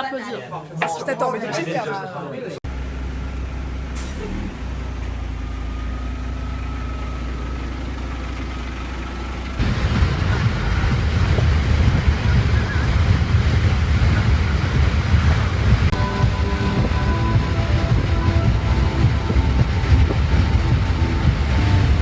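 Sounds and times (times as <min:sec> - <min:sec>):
rough rumbling noise: 0:03.9 - 0:22.0.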